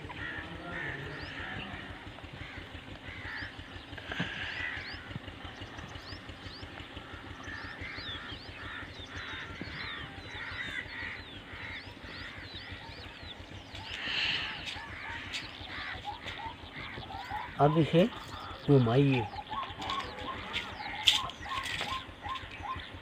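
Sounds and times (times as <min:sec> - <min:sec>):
birds calling and chirping: 0:00.0 - 0:23.0.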